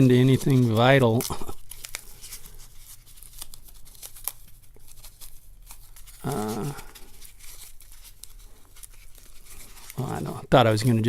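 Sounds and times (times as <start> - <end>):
packaging tearing and crackling: 0.0 - 10.4.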